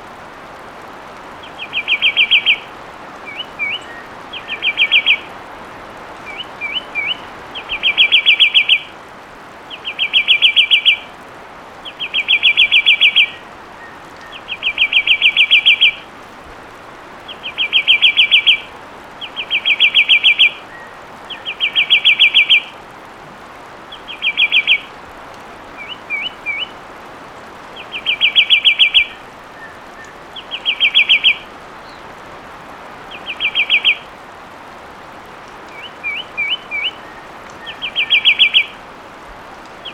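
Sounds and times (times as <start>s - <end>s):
wren singing whistled trills: 1.4s - 5.3s, 6.2s - 8.9s, 9.7s - 11.1s, 11.8s - 16.1s, 17.3s - 22.8s, 23.9s - 24.9s, 25.8s - 26.8s, 27.8s - 32.0s, 33.1s - 34.1s, 35.7s - 38.8s.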